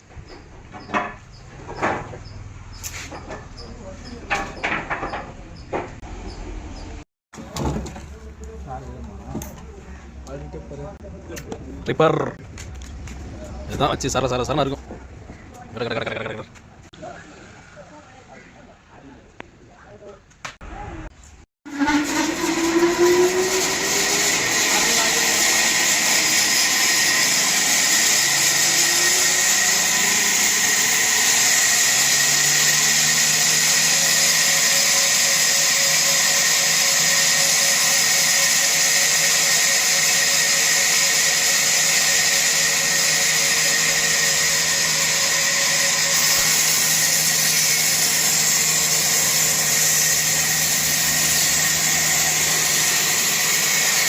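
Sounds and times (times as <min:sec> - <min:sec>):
woodworking machine running: 0:21.7 - 0:54.0.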